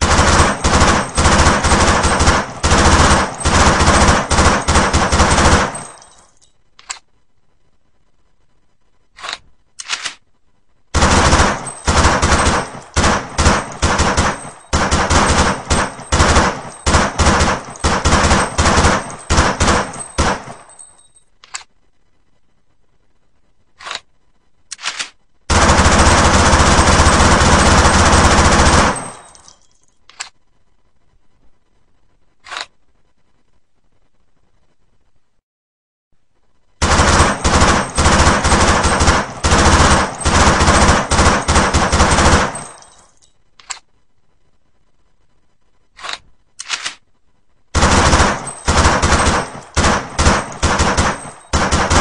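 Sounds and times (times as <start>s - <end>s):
submachine gun firing: 0.0s - 6.2s, 10.9s - 20.9s, 24.8s - 29.5s, 36.8s - 43.0s, 47.8s - 52.0s.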